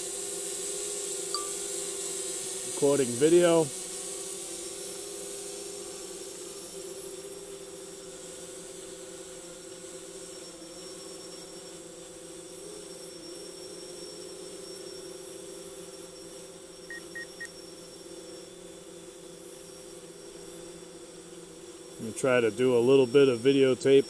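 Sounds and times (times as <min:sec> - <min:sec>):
short high beeps: 0:01.4 - 0:01.6, 0:16.9 - 0:17.5
drone propellers buzzing: 0:16.9 - 0:17.5.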